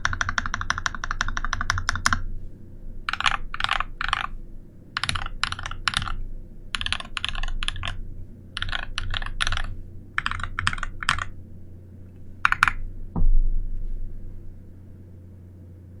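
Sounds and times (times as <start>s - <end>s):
mechanical keyboard keys thocking: 0.0s - 2.2s, 3.1s - 4.3s, 5.0s - 6.2s, 6.8s - 8.0s, 8.6s - 11.3s, 12.4s - 12.8s
deep thump: 13.1s - 14.4s.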